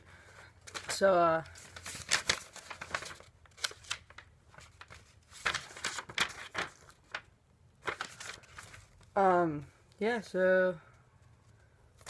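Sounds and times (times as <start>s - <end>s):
packaging crinkling and rustling: 0.6s - 9.2s
sharp packaging crackles: 0.7s - 7.2s.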